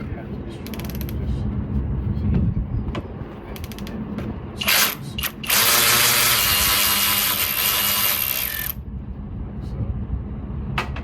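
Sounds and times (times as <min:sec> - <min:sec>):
ratchet wrench clicking: 0:00.7 - 0:01.2, 0:04.6 - 0:08.8
power ratchet motor whirring: 0:04.6 - 0:08.8.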